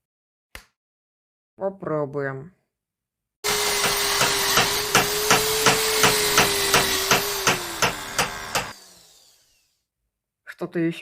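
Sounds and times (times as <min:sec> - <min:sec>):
hammer blows: 0:03.4 - 0:08.8.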